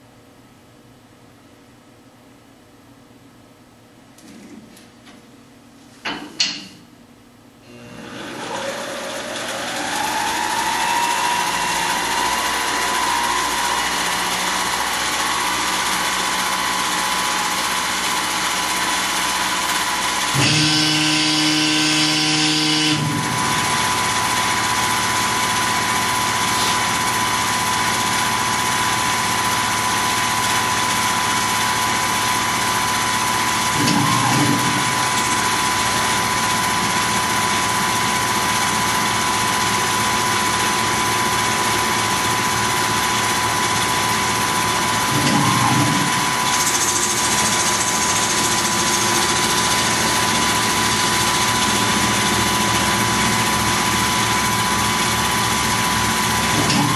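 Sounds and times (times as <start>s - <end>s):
machine hum and hiss: 3.6s - 56.9s
milling machine spindle whine: 7.7s - 56.9s
pitched machine sound: 7.7s - 56.9s.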